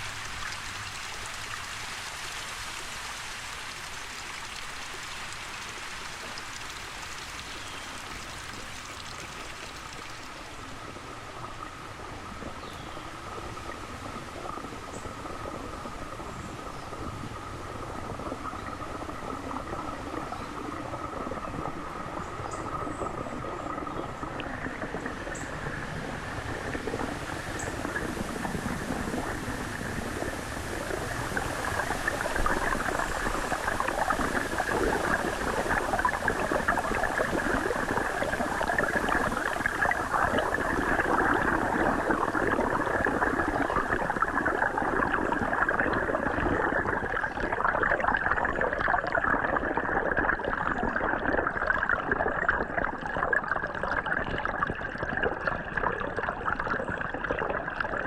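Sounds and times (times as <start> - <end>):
underwater bubbling of falling water: 0.0 - 58.0.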